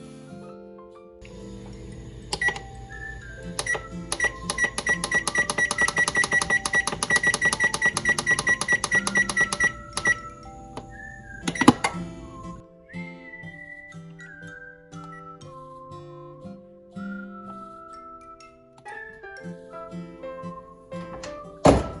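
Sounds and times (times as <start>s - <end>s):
background music ticking beat: 1.2s - 12.6s.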